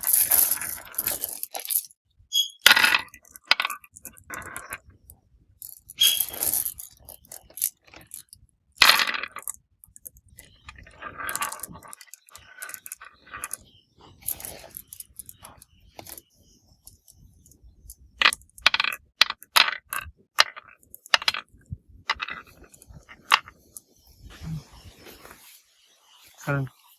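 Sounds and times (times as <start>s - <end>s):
marbles clacking on a track: 5.6s - 16.2s, 16.9s - 21.5s.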